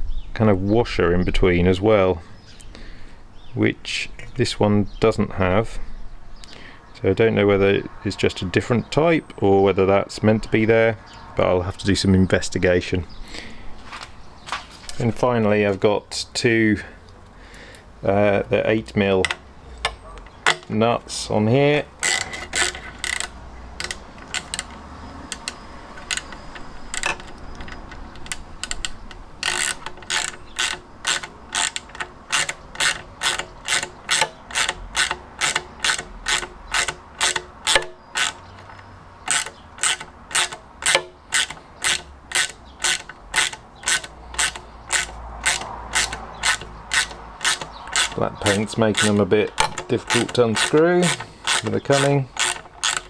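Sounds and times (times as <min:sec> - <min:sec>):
ratchet wrench clicking: 0:19.0 - 0:20.7, 0:21.8 - 0:53.0.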